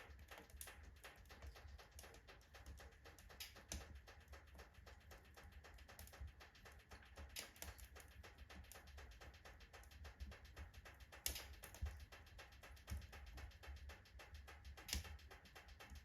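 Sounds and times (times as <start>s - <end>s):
logs crackling in fireplace: 0.0s - 8.8s, 9.5s - 12.2s, 14.4s - 15.2s.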